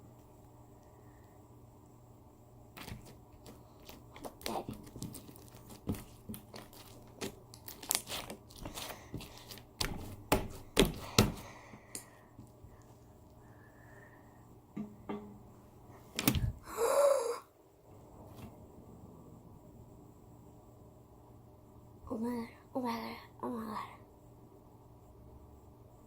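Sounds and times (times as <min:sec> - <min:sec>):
slime squished and stretched: 0:02.8 - 0:11.5.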